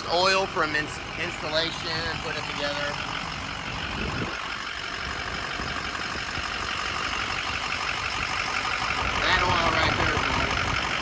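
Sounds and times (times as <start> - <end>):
diesel engine idling: 0.0 - 11.0.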